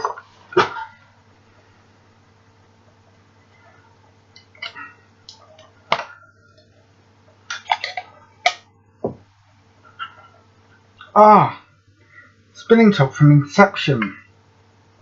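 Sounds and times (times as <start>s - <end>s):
faint electrical hum: 0.0s - 15.0s.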